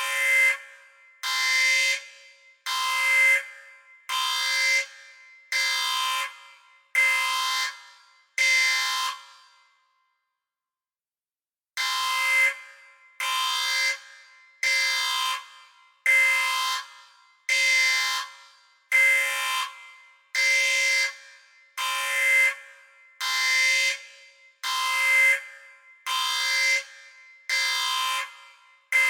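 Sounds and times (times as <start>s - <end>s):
electronic alarm horn: 11.8s - 14.0s, 16.1s - 16.9s, 18.9s - 21.2s.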